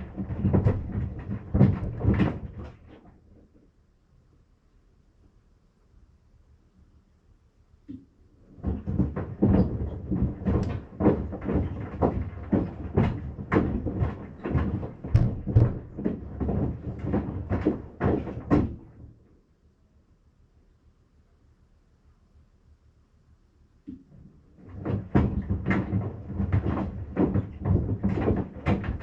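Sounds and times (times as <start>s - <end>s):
sandals thudding in washing machine drum: 7.9s - 19.2s, 24.6s - 29.0s.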